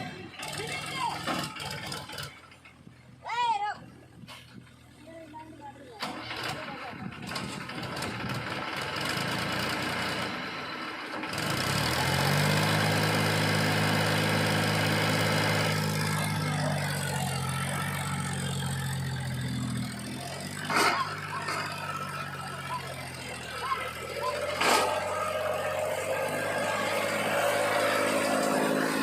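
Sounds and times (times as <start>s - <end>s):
tractor diesel engine running: 0.0s - 29.0s.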